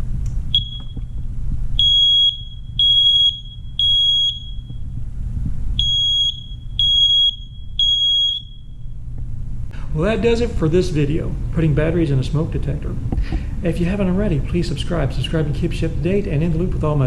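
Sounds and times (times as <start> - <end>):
smoke alarm high-pitched beeps: 0.5 - 1.0, 1.8 - 4.9, 5.8 - 9.0
smoke alarm chirp: 0.5 - 1.2, 1.8 - 5.0, 5.8 - 9.0.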